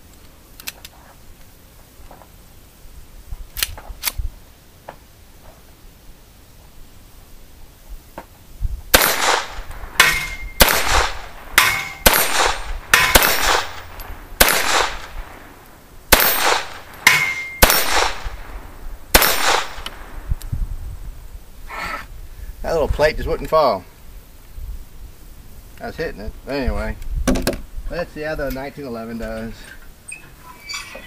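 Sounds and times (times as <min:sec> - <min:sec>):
pistol shots: 0:08.9 - 0:15.4, 0:16.1 - 0:20.1
steel plate ringing: 0:10.0 - 0:10.7, 0:11.6 - 0:13.9, 0:16.2 - 0:17.9.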